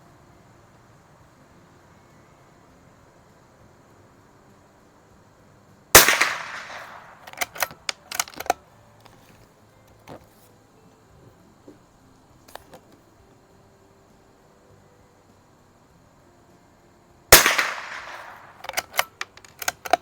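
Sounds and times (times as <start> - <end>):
rifle shot: 5.9 - 8.6, 17.3 - 20.0
rifle bolt clicking: 6.0 - 9.2, 17.3 - 20.0.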